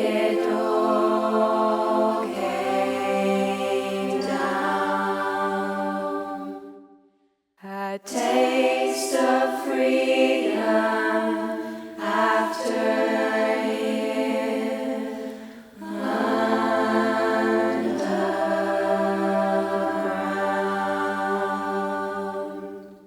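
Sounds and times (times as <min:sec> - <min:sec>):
choir singing long held notes: 0:00.0 - 0:07.0, 0:07.7 - 0:23.0
singers breathing: 0:11.5 - 0:12.0, 0:15.0 - 0:15.8.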